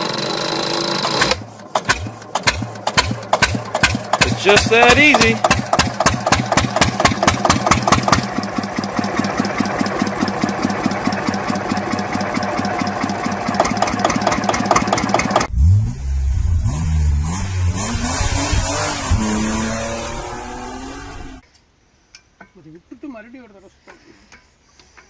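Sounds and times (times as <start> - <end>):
small diesel engine running: 0.0 - 15.5
engine pitch rising: 0.0 - 21.4.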